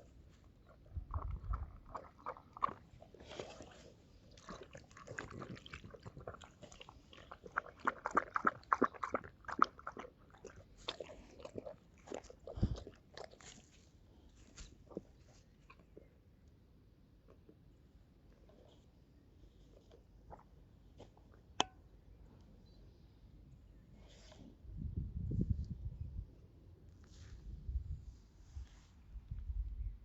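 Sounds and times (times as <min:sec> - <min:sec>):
animal chewing and crunching: 0:00.0 - 0:16.1.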